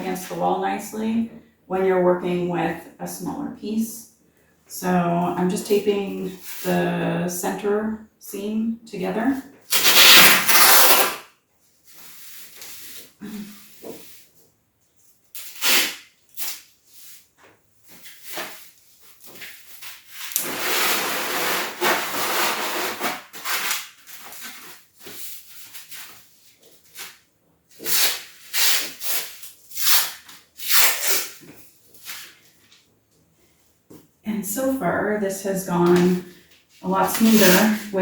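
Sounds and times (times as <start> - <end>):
tape ripping off a roll: 9.7 - 11.4, 15.3 - 17.3, 17.9 - 27.2, 27.8 - 32.4
foam sheets rubbing and rustling: 9.7 - 14.4, 15.4 - 32.7, 36.8 - 38.0.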